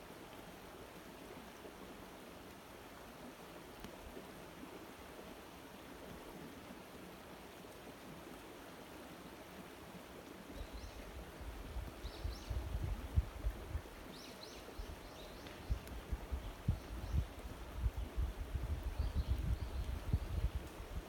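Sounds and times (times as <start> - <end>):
wind buffeting microphone: 11.4 - 13.9, 14.8 - 21.0.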